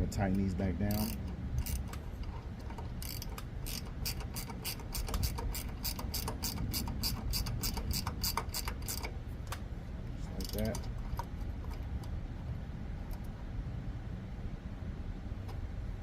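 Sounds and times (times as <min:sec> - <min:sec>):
ratchet wrench clicking: 0:00.3 - 0:09.2, 0:10.4 - 0:11.8.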